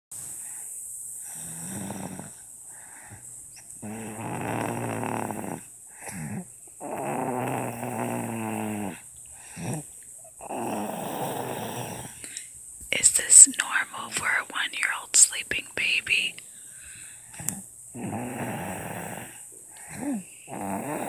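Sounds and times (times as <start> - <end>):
baby snoring: 1.2 - 3.2, 3.8 - 12.3, 13.0 - 15.0, 17.3 - 21.0.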